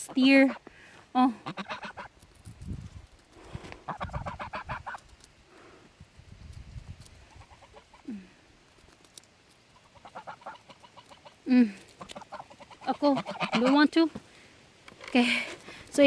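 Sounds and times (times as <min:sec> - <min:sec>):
geese clucking: 0:00.0 - 0:00.7, 0:01.3 - 0:02.2, 0:03.7 - 0:05.2, 0:07.2 - 0:08.1, 0:09.6 - 0:14.1.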